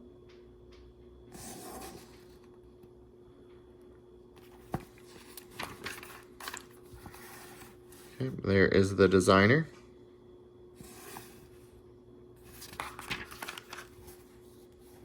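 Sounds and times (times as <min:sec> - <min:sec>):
faint steady hum: 0:00.0 - 0:15.0
paper pages turning: 0:04.4 - 0:08.1, 0:12.4 - 0:15.0.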